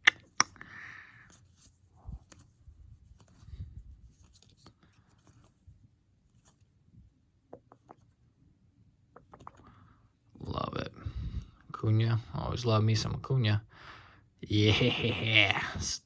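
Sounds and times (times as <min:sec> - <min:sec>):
cards flipped by hand: 0:04.1 - 0:05.6, 0:09.2 - 0:09.7.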